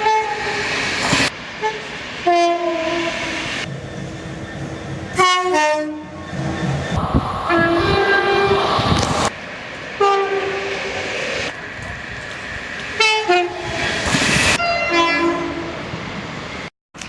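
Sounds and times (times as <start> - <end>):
two-tone train horn: 0.0 - 0.6, 1.6 - 3.3, 5.2 - 6.2, 7.5 - 8.7, 10.0 - 10.8, 13.0 - 13.8, 14.6 - 15.7
train rumble: 0.0 - 17.0.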